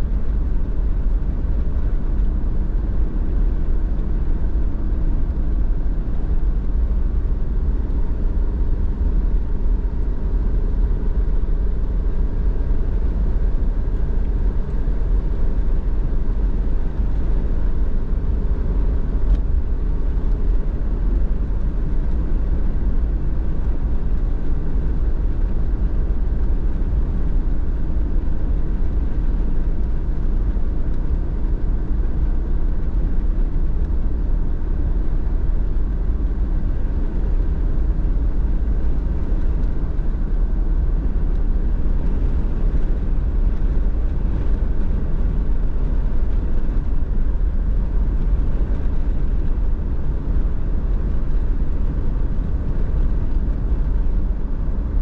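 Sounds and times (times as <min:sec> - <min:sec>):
car engine and tyre rumble: 0:00.0 - 0:55.0.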